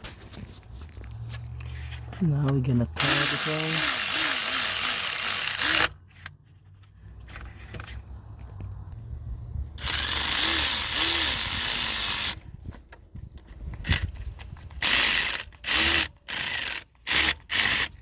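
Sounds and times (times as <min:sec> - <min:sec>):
hand ratchet clicking: 0:03.0 - 0:06.3, 0:09.8 - 0:12.4, 0:14.8 - 0:18.0.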